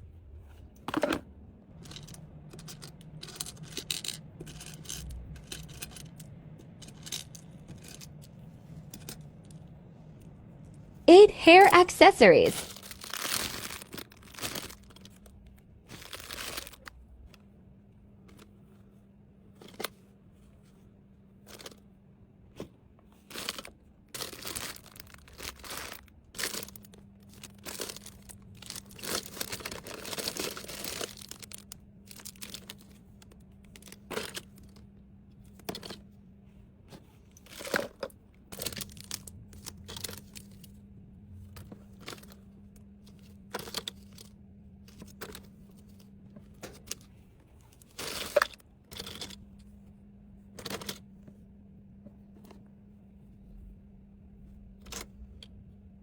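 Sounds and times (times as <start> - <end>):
faint low hum: 0.0 - 56.0
plastic packaging crinkling: 12.7 - 15.2, 16.0 - 16.9, 23.3 - 32.9.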